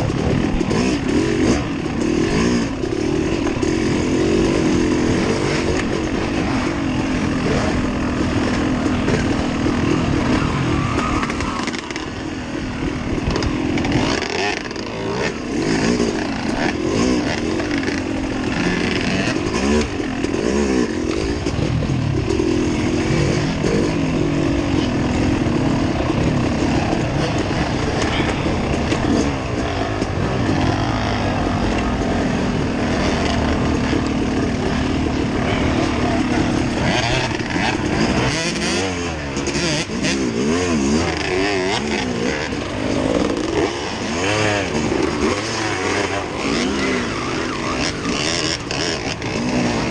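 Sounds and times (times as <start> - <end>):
small engine revving: 0.0 - 49.9.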